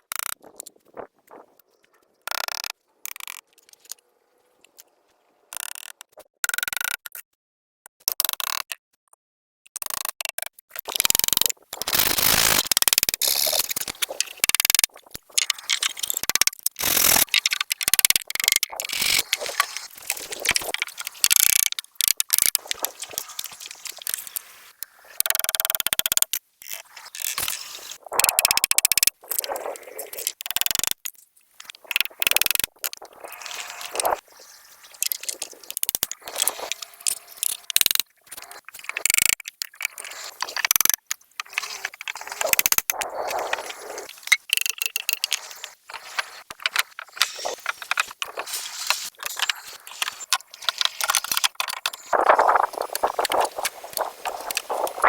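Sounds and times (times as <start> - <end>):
wood scraping: 10.9 - 25.6, 26.2 - 55.0.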